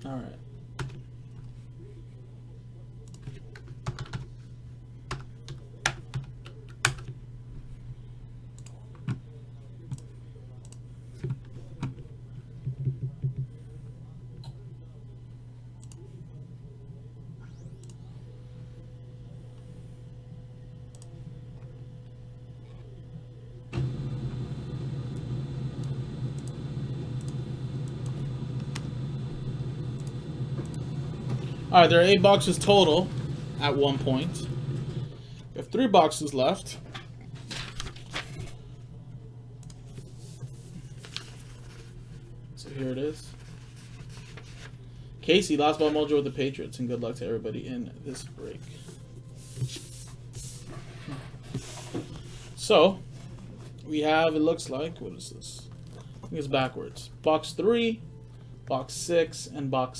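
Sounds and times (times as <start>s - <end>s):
low rumbling background noise: 0.0s - 59.9s
low hum: 13.5s - 35.8s.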